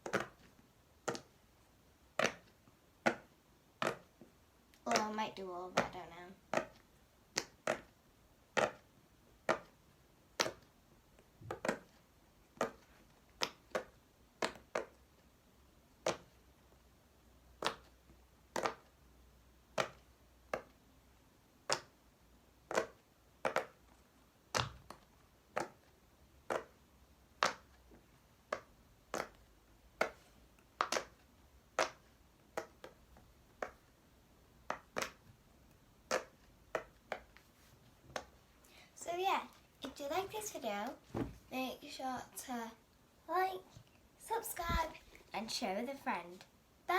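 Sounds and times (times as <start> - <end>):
pop-it toy bubbles popping: 4.9 - 9.8, 10.4 - 10.7, 12.5 - 15.0, 17.6 - 17.9, 19.7 - 20.8, 22.6 - 23.9, 27.4 - 27.8, 30.8 - 33.9.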